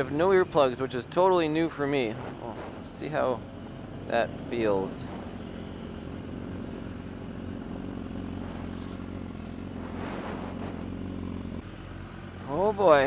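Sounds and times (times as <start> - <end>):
motorcycle engine idling: 2.9 - 13.0.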